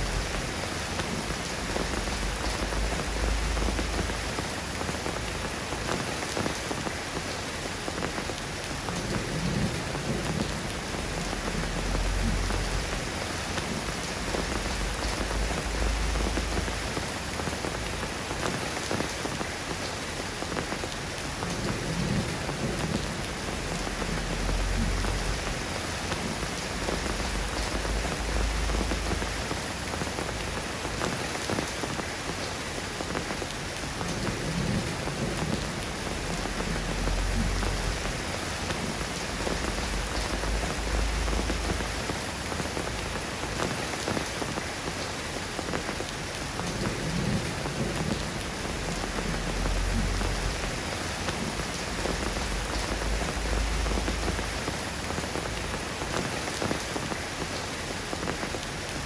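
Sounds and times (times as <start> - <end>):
steady rain falling: 0.0 - 59.0
distant thunder rumbles: 8.9 - 18.0, 21.4 - 31.0, 33.9 - 44.5, 46.6 - 56.7.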